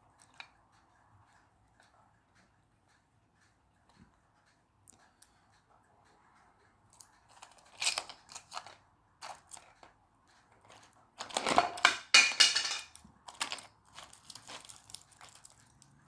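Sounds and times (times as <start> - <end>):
plastic multi-tool scraping: 7.3 - 9.8, 10.7 - 11.9, 13.3 - 15.8.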